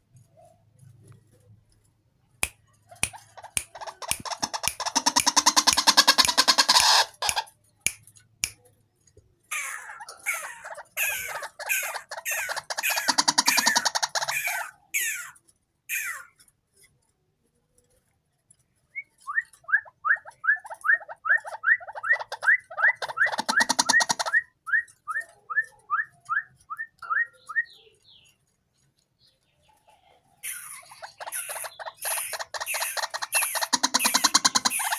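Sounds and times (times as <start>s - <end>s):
bird rattling call: 3.1s - 7.5s, 9.5s - 16.3s, 20.6s - 24.4s, 30.4s - 34.9s.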